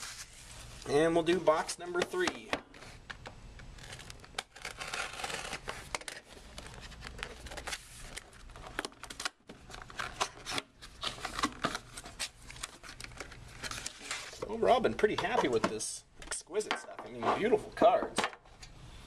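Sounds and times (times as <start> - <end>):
wrapping tearing and crinkling: 3.6 - 14.6.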